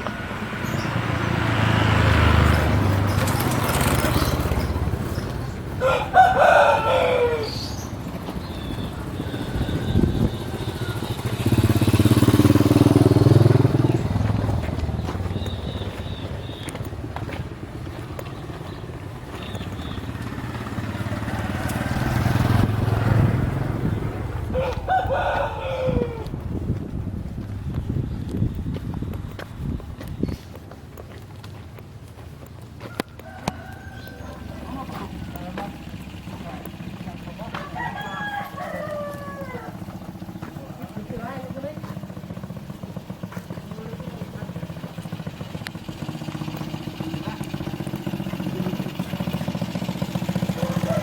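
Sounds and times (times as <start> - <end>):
small vehicle engine passing: 0.0 - 32.4, 33.2 - 51.0
rooster crowing: 5.8 - 7.8, 24.5 - 26.3, 32.8 - 35.5, 37.5 - 40.2, 50.5 - 51.0.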